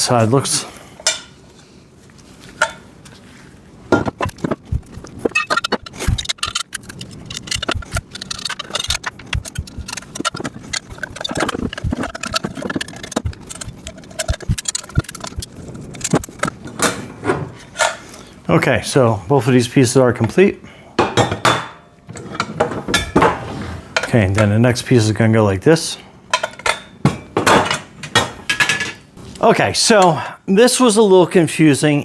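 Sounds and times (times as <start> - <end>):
metal parts clinking and clattering: 4.0 - 17.0.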